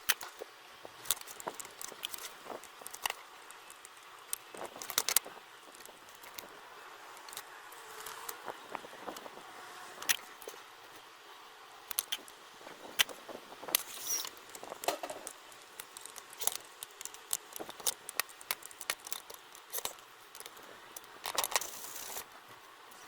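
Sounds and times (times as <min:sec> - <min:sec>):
scraping rustles: 0:12.6 - 0:22.6
tools clicking and tapping: 0:14.1 - 0:21.7.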